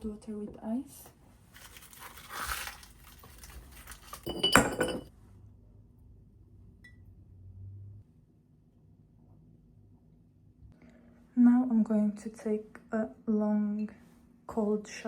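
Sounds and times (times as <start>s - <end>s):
ice cubes rattling in glass: 1.6s - 5.0s
glass clinking: 4.0s - 5.1s.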